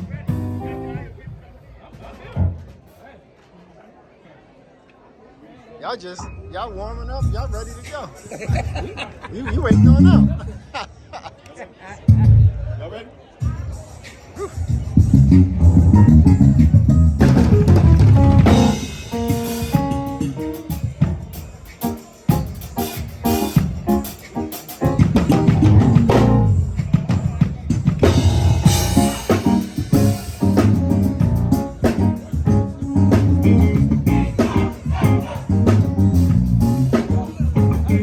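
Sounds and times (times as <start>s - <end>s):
bass guitar: 0.0s - 1.3s, 2.2s - 2.8s, 9.6s - 10.5s, 12.1s - 12.7s, 14.8s - 21.3s, 22.3s - 38.0s
drum kit: 0.0s - 3.2s, 13.4s - 38.0s.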